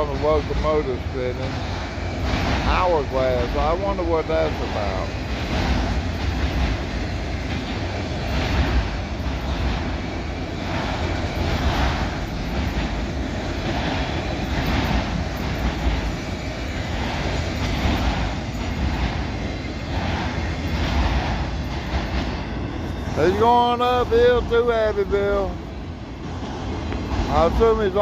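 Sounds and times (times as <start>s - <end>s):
train wheel clacks: 0.0s - 28.0s
train wheels rumbling on rail: 0.0s - 28.0s.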